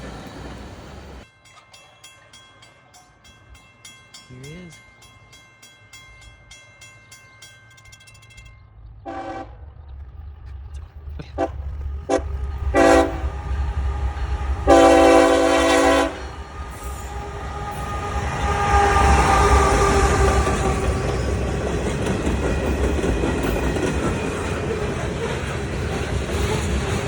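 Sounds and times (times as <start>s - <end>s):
train rumble: 0.0s - 27.0s
bell ringing rapidly: 1.4s - 8.7s
locomotive horn blasts: 9.1s - 9.6s, 11.4s - 21.3s.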